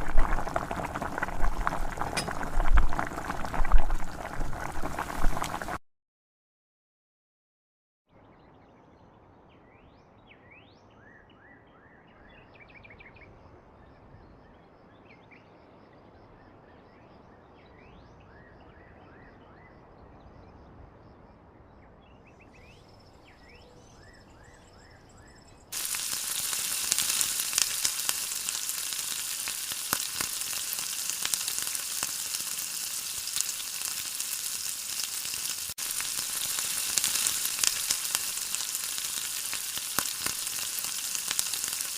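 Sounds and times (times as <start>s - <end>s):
food sizzling in hot oil: 0.0s - 5.8s, 25.7s - 41.9s.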